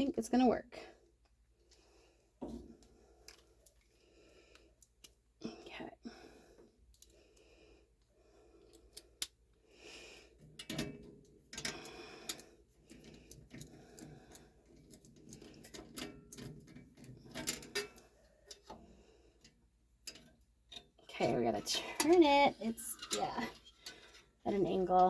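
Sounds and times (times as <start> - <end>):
hand tool clicking and scraping metal: 10.4 - 18.8, 19.4 - 25.0.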